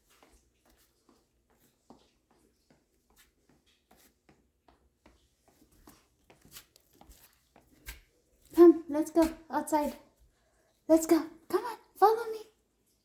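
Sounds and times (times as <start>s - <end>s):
light taps and scuffs: 0.0s - 10.3s.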